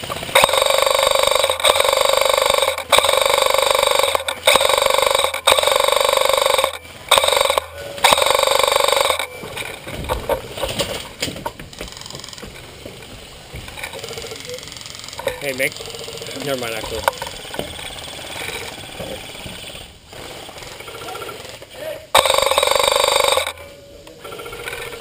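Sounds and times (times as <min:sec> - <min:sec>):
airsoft gun firing full auto: 0:00.0 - 0:09.4, 0:14.9 - 0:25.0
scattered movement sounds: 0:00.2 - 0:25.0.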